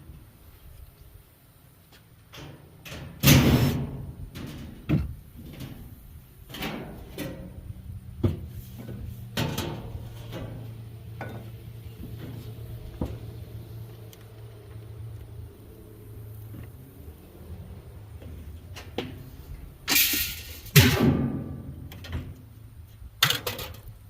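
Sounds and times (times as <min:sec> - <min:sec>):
knocks and bangs on metal: 0:20.7 - 0:22.4.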